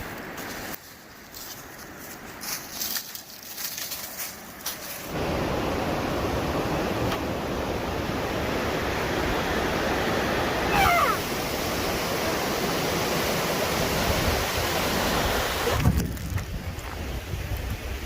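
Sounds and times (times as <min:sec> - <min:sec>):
river rushing: 0:04.8 - 0:16.0
squeaky sliding call: 0:10.7 - 0:11.2.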